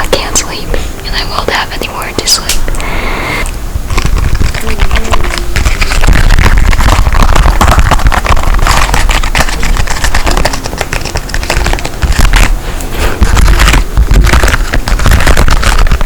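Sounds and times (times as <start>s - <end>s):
fidget toys clicking and scraping: 3.9s - 16.0s.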